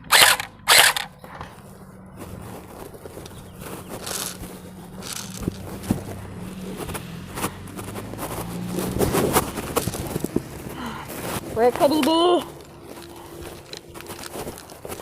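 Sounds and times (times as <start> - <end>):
sharp clicks: 0.0 - 1.1
rustling and scraping: 0.0 - 15.0.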